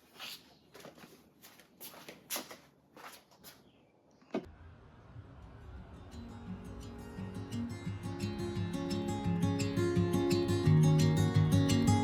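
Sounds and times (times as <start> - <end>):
quiet music: 4.5 - 12.0.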